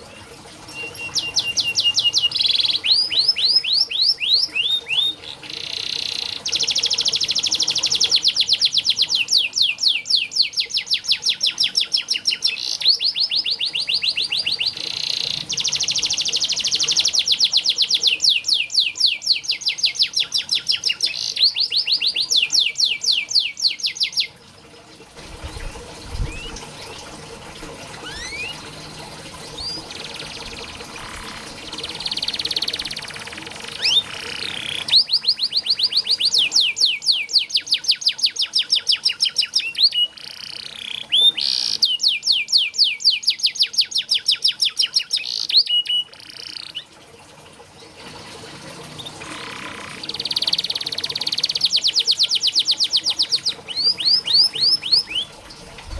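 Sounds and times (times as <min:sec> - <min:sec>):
canary chirps and whistles: 0:00.7 - 0:24.3, 0:28.0 - 0:28.7, 0:31.9 - 0:46.8, 0:49.4 - 0:55.3
canary trilling: 0:00.7 - 0:24.3, 0:28.0 - 0:28.9, 0:29.5 - 0:37.7.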